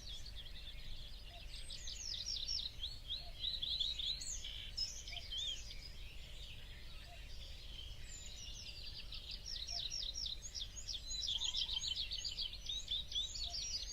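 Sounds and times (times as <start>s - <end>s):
small birds chirping: 0.0s - 13.9s.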